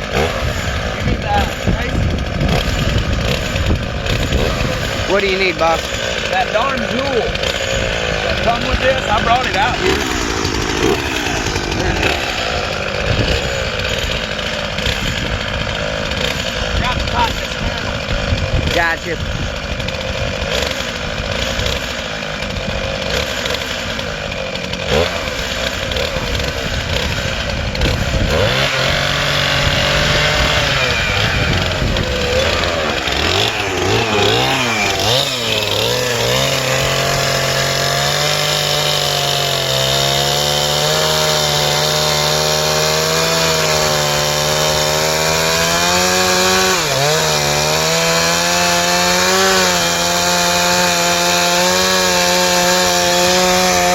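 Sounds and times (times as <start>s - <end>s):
chainsaw cutting log: 0.0s - 53.9s.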